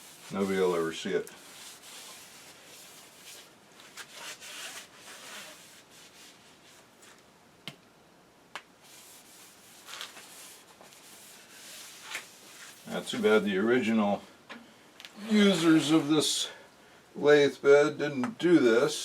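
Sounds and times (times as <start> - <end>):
faint rubbing strokes: 0.0 - 7.2, 8.8 - 13.5, 15.2 - 16.6.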